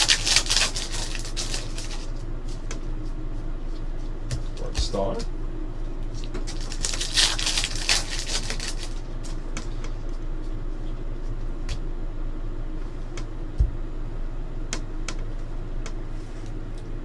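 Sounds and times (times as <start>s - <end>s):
trading cards clicking: 0.0s - 2.1s
low room hum: 0.0s - 17.0s.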